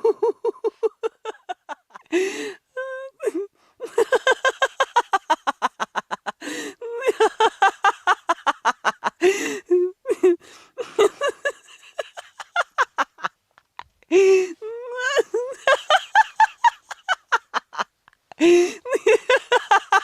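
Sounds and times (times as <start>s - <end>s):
woman laughing hard: 0.0s - 13.4s, 14.1s - 20.0s
quick breaths: 2.1s - 2.6s.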